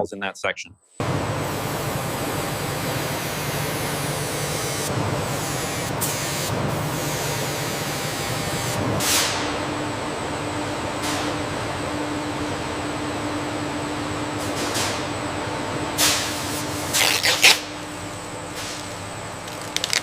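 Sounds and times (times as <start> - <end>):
hissing machine noise: 1.0 - 11.3.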